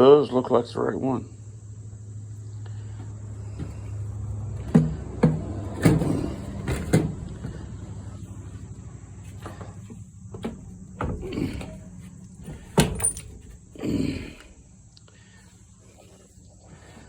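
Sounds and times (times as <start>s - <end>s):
steady low hum: 0.0s - 17.0s
parts knocking on a bench: 3.5s - 7.6s.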